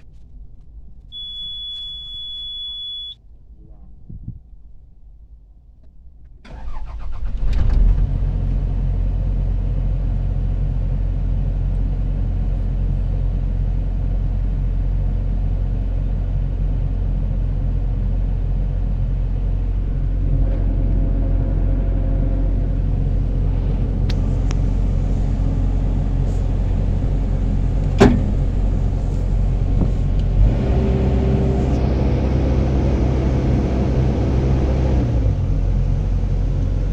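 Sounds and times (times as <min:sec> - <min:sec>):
diesel engine cranking and idling: 0:06.2 - 0:36.9.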